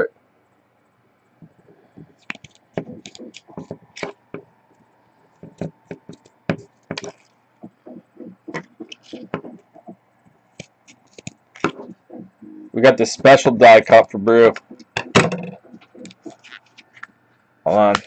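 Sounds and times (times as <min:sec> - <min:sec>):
hands tapping on tabletop: 0:01.4 - 0:04.5, 0:05.4 - 0:07.8.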